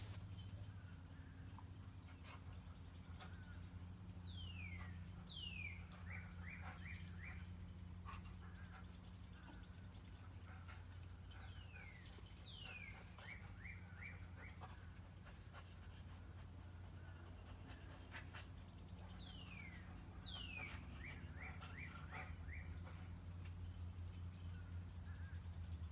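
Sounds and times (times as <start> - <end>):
songbird singing: 4.2 - 7.7, 18.7 - 25.8.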